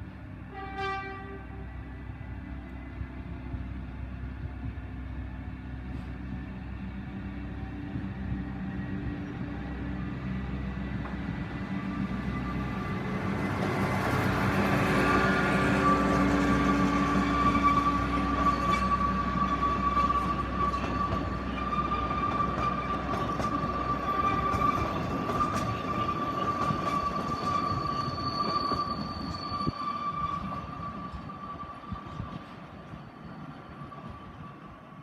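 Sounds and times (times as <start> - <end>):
train rumbling past: 0.0 - 35.0.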